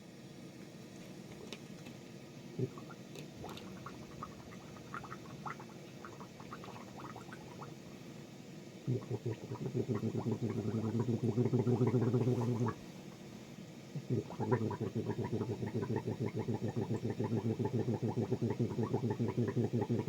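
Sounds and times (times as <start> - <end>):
person gargling: 8.9 - 12.8, 14.0 - 20.0.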